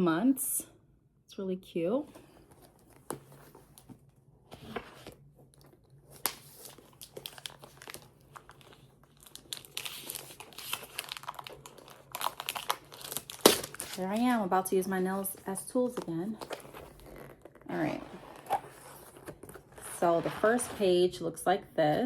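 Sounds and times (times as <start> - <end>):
packaging crinkling and tearing: 4.6 - 14.2.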